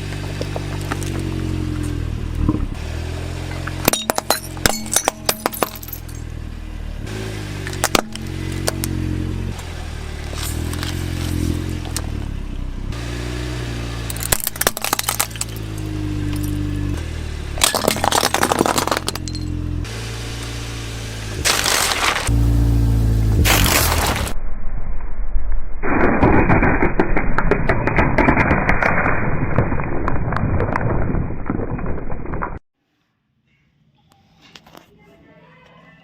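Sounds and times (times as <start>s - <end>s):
hard plastic toys clattering: 17.6s - 19.5s.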